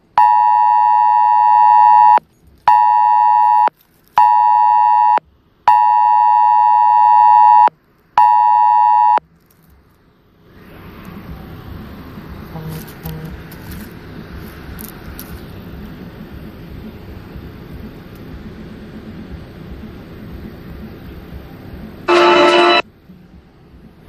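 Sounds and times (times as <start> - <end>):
two-pitch alert beep: 22.1 - 22.8.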